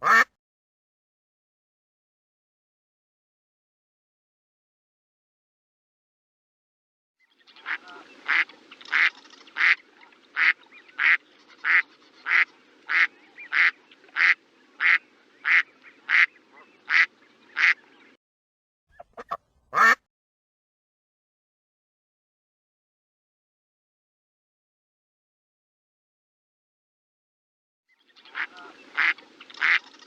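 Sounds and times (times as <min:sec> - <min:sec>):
duck quacking: 0:00.0 - 0:00.3, 0:07.6 - 0:09.8, 0:10.4 - 0:17.8, 0:19.0 - 0:20.0, 0:28.3 - 0:29.8
short duck calls: 0:00.0 - 0:00.3, 0:07.6 - 0:09.8, 0:10.4 - 0:17.8, 0:18.9 - 0:20.0, 0:28.3 - 0:29.8.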